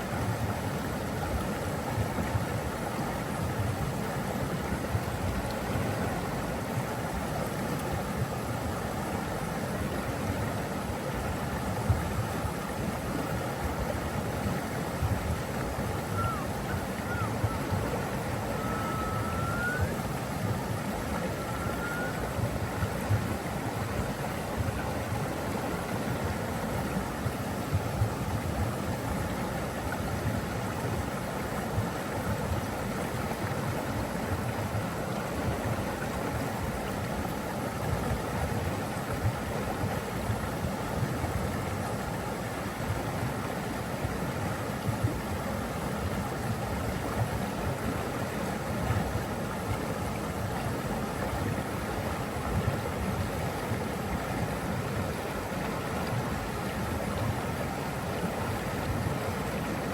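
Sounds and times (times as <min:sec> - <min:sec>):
rushing flowing water: 0:00.0 - 0:59.9
faint rising whistles: 0:16.0 - 0:20.1, 0:21.2 - 0:22.4.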